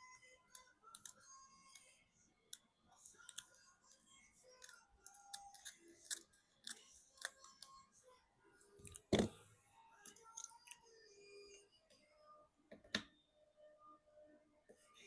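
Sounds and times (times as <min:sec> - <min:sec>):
metal tweezers clicking and scraping: 0:04.5 - 0:07.7.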